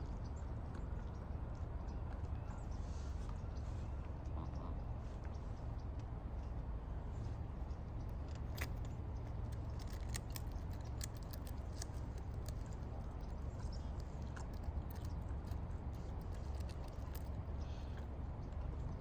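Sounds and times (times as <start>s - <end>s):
birds pecking at chip bag: 8.1s - 18.1s.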